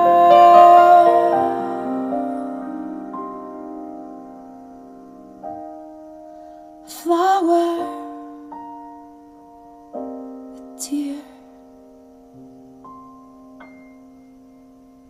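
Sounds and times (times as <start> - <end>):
person singing: 0.0 - 3.7, 6.9 - 8.5, 10.8 - 11.5
electric piano chords: 0.0 - 7.0, 7.6 - 15.0.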